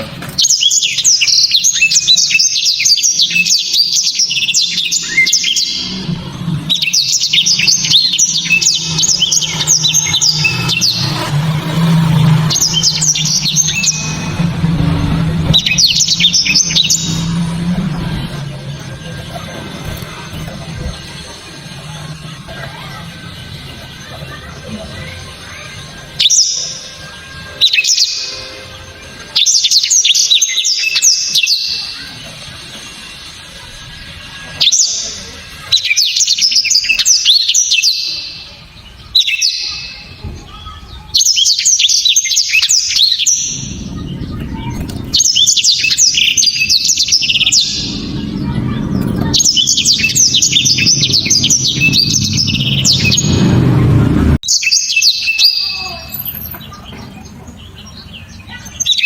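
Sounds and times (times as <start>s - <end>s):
canary singing trills: 0.0s - 59.0s
low rumble: 5.6s - 25.4s, 43.2s - 54.4s.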